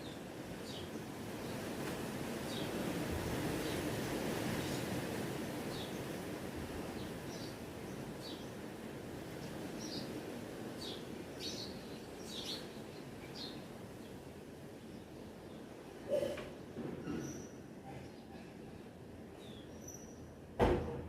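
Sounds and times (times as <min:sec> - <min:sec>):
steady background hiss: 0:00.0 - 0:16.8
small birds chirping: 0:07.0 - 0:08.7, 0:10.8 - 0:14.2.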